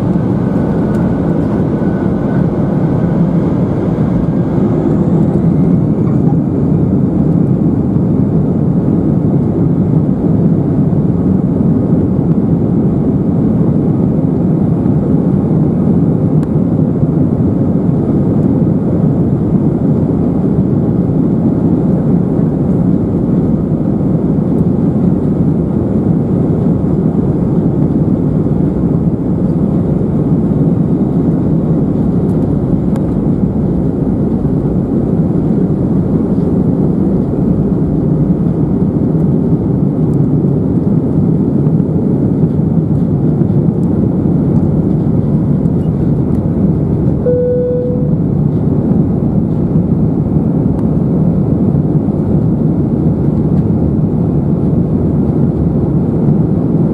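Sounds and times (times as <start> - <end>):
rushing airflow: 0.0 - 7.7
jet engines in airliner cabin: 0.0 - 56.9
cabin chime tone: 47.3 - 48.2.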